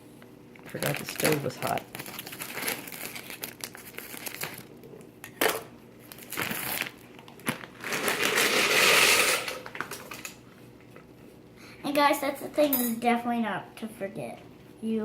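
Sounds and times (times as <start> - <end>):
crinkling and rustling handling noise: 0.6 - 5.5, 6.1 - 8.3.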